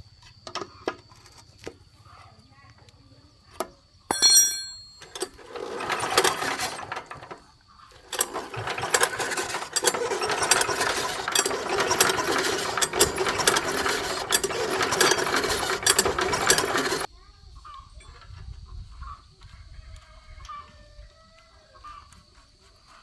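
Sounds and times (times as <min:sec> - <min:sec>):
small machine clattering: 0:03.6 - 0:17.1
short metallic ring: 0:04.1 - 0:07.0.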